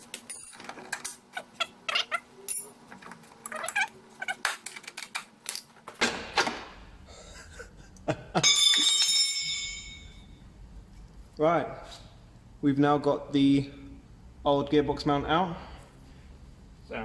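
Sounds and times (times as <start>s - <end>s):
metal piece clanging: 8.4s - 10.3s.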